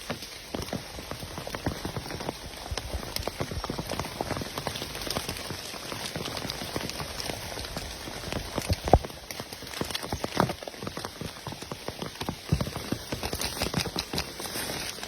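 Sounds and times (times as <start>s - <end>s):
rain falling: 0.0s - 15.0s.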